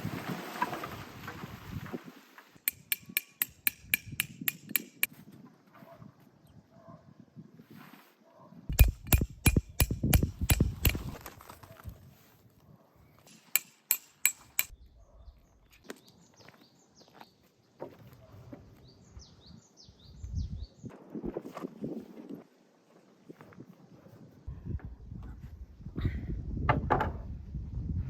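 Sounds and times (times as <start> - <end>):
hammer striking metal pegs: 2.7 - 5.1, 8.7 - 11.2, 13.3 - 14.7.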